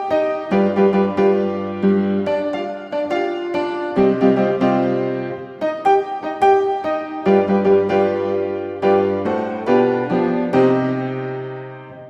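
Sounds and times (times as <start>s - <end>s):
slow piano melody: 0.0s - 12.0s.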